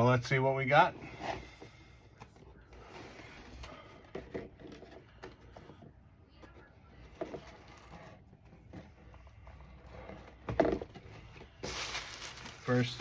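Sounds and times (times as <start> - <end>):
cardboard box rustling: 7.0 - 13.0.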